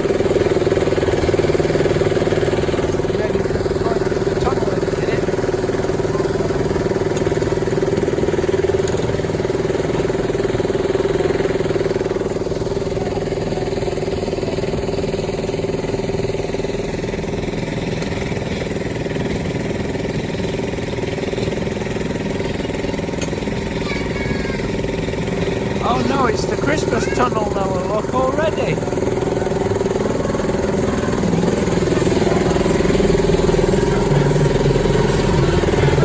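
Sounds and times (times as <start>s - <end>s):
miniature locomotive engine running: 0.0s - 36.0s.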